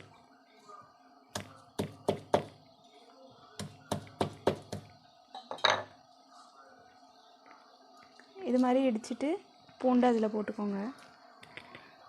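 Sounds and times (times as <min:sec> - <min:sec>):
garlic being pounded: 0:01.3 - 0:02.6, 0:03.6 - 0:05.0.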